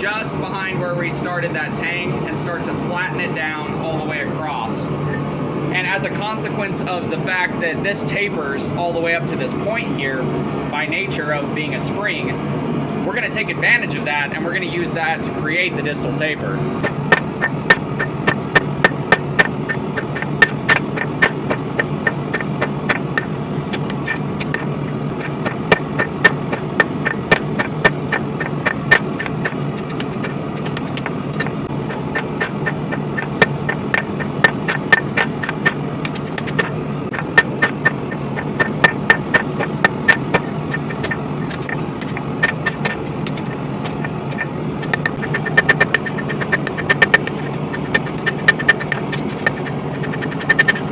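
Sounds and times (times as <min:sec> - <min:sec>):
steady low drone: 0:00.0 - 0:50.9
hammer striking steel on anvil: 0:16.8 - 0:49.6.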